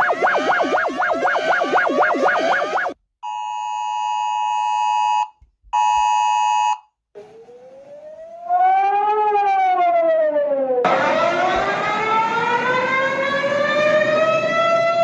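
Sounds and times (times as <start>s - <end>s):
two-tone attention signal: 0.0s - 3.0s
wailing siren: 0.0s - 3.0s, 7.2s - 15.0s.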